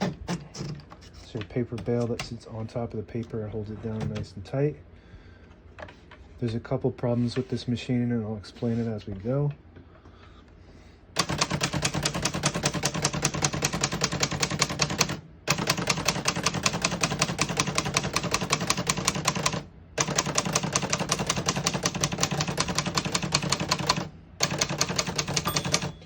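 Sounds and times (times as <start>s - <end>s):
manual typewriter typing: 11.2s - 26.0s.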